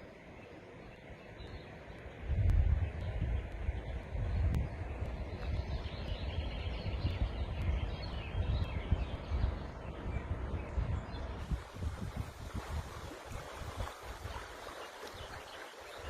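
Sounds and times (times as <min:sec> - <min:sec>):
flowing river water: 0:00.0 - 0:16.0
low gusty wind rumble: 0:00.0 - 0:16.0
small birds chirping: 0:00.0 - 0:16.0.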